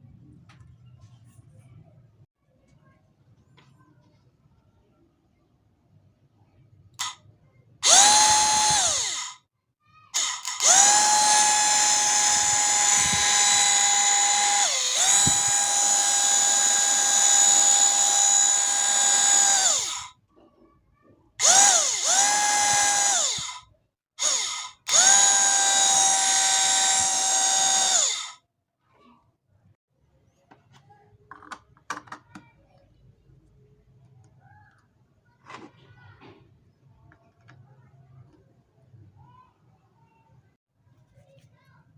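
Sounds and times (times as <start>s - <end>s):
electric motor whine: 7.8s - 9.3s, 10.2s - 20.1s, 21.4s - 23.6s, 24.2s - 28.3s.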